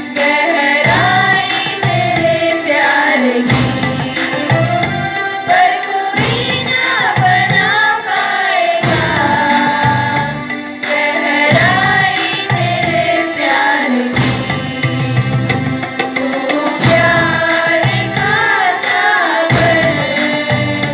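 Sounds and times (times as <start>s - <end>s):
group singing: 0.0s - 20.9s
musical accompaniment with beat: 0.0s - 20.9s.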